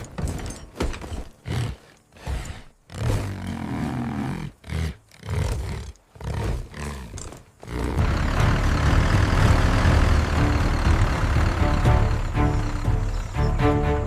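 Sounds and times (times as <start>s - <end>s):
bull bellowing: 1.4s - 9.1s
steady loud rumble: 7.8s - 14.0s.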